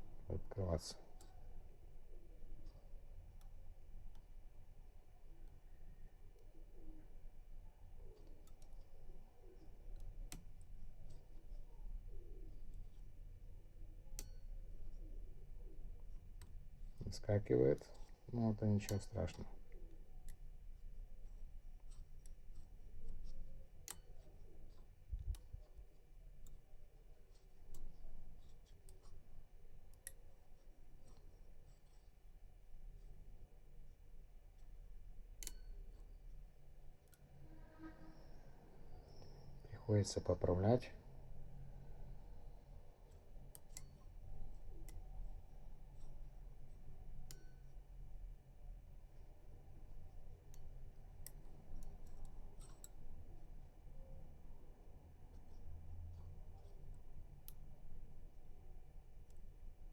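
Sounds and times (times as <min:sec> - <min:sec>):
faint low hum: 0:00.0 - 0:59.9
lock pick clicking and scraping: 0:35.4 - 0:36.1.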